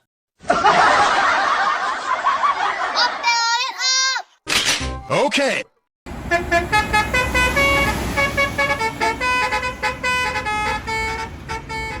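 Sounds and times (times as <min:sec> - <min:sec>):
musical bus horn: 0:06.1 - 0:12.0.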